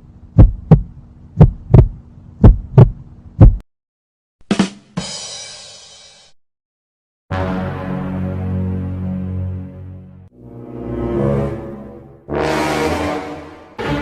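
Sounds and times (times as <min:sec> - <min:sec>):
heartbeat thumps: 0:00.4 - 0:03.6.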